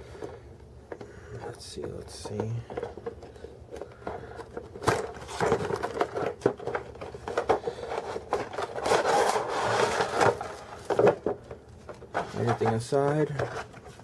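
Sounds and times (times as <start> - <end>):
cardboard box scraping and rubbing: 8.2 - 10.6.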